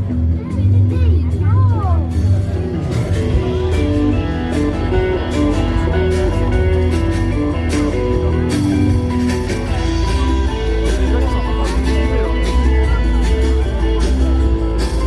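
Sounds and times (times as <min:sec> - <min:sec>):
guitar melody of held notes: 0:00.0 - 0:15.0
heavy bass: 0:00.0 - 0:15.0
regular drum beat: 0:01.3 - 0:15.0.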